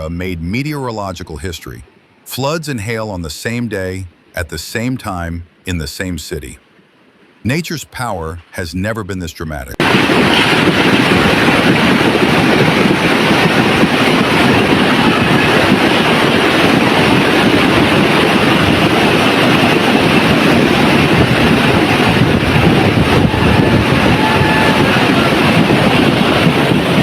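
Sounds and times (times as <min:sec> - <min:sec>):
torrential rain and rushing water: 0:09.6 - 0:27.0.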